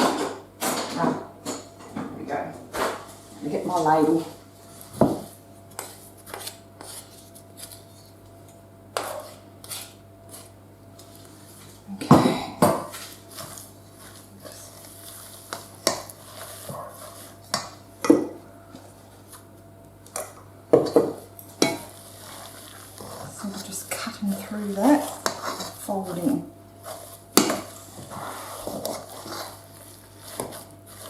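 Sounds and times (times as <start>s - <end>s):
ladle scraping a mixing bowl: 5.7s - 8.1s, 9.0s - 11.2s, 12.9s - 17.7s, 21.6s - 31.0s.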